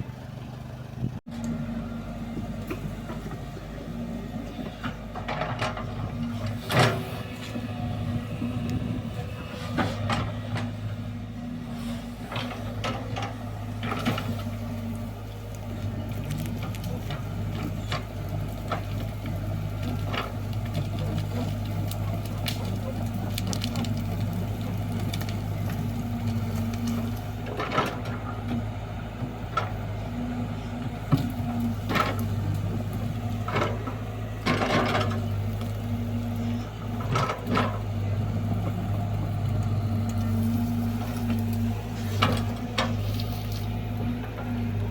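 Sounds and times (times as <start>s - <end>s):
diesel engine running: 0.0s - 44.9s
excavator bucket clanking: 4.7s - 7.5s, 12.3s - 14.6s, 30.8s - 35.9s, 36.8s - 38.9s.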